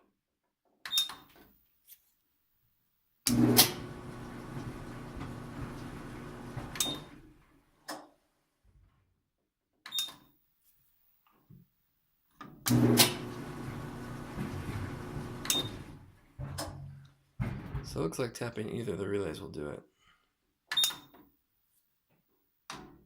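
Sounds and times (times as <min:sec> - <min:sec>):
dryer motor humming: 0:03.3 - 0:07.3, 0:12.7 - 0:16.8.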